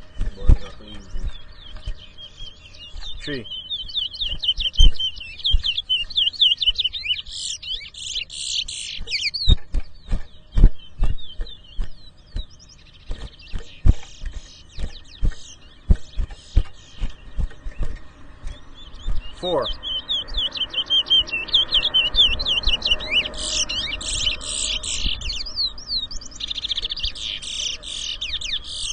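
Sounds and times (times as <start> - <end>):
finch singing warbling song: 0.0 - 28.9
sharp clicks or knocks: 9.4 - 12.5.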